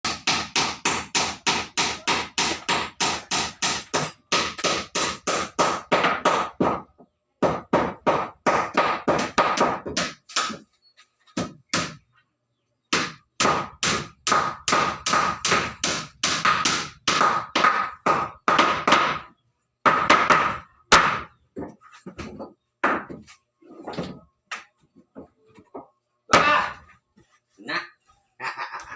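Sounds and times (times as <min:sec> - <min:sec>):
hammer striking wooden floorboards: 0:00.1 - 0:10.6, 0:11.4 - 0:12.0, 0:12.9 - 0:23.3.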